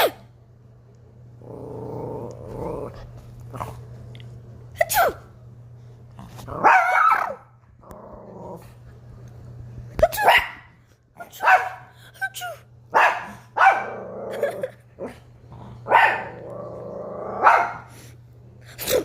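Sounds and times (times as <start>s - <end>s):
dog growling: 1.4s - 3.9s, 7.8s - 8.8s, 13.8s - 17.5s.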